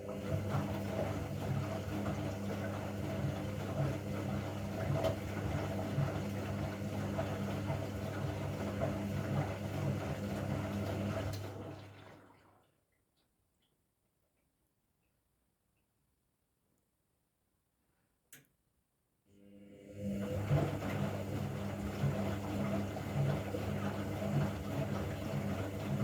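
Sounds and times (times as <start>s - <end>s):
washing machine motor hum: 0.0s - 12.6s, 19.4s - 26.0s.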